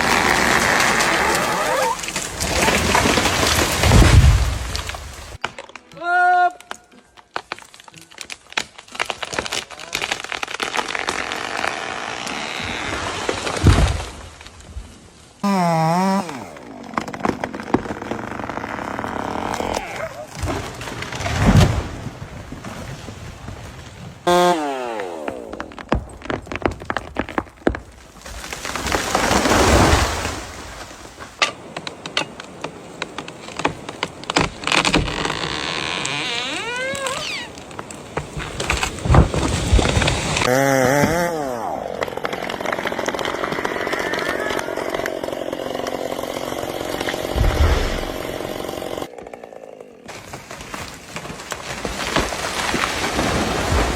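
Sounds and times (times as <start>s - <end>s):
tree crashing down: 0.0s - 5.6s, 7.4s - 53.9s
branches crackling: 0.0s - 53.9s
wood cracking and snapping: 0.0s - 53.9s
tree trunk thud on ground: 47.0s - 49.0s.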